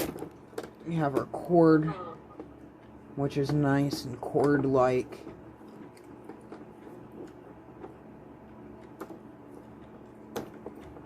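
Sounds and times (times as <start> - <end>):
faint clicks and taps: 0.0 - 11.0
low steady hum: 0.0 - 11.0.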